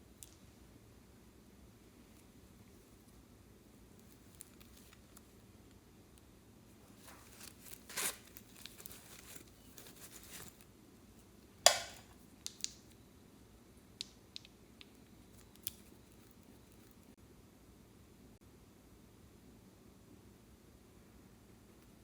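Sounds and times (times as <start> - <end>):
crinkling rustle: 3.9 - 5.4, 6.7 - 10.7.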